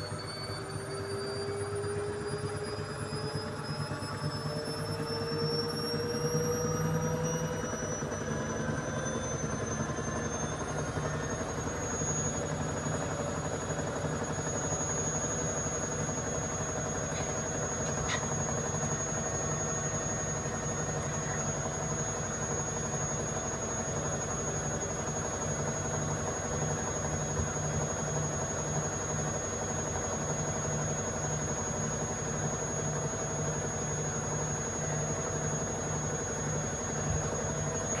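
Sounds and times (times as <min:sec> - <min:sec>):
washing machine motor whine: 0:00.0 - 0:38.0.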